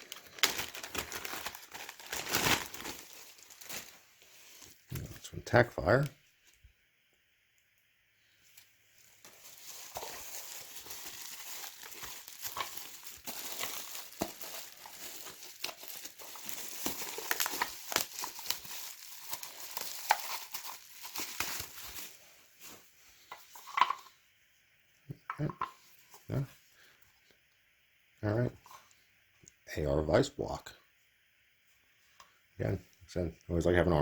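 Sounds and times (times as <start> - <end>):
packaging crinkling: 0.0 - 5.1, 9.2 - 22.8.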